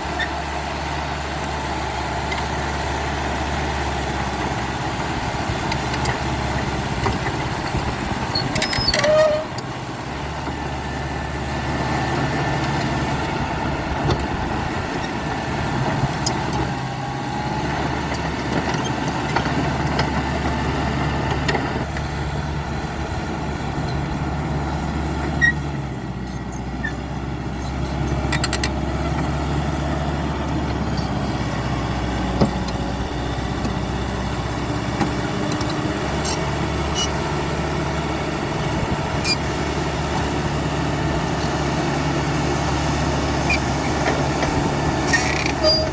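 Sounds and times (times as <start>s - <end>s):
bulldozer diesel engine running: 0.0s - 45.9s
brief squeal: 8.3s - 9.6s, 25.4s - 25.6s, 45.1s - 45.9s.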